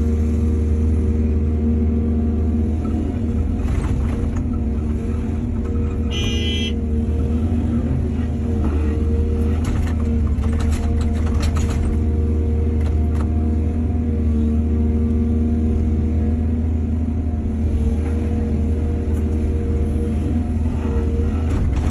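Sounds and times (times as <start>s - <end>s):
diesel machinery running: 0.0s - 21.9s
brief high-pitched tone: 6.1s - 6.8s
knocks and clatter: 9.5s - 12.1s.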